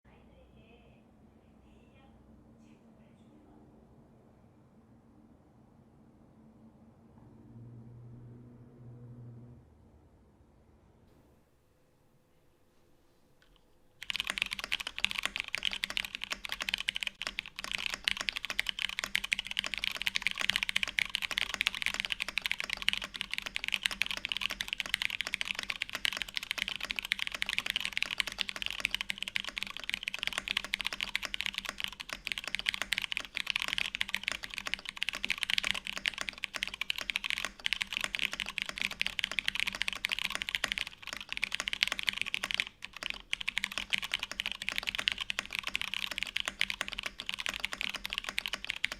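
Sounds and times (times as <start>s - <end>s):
fast mechanical keyboard typing: 14.0s - 48.9s.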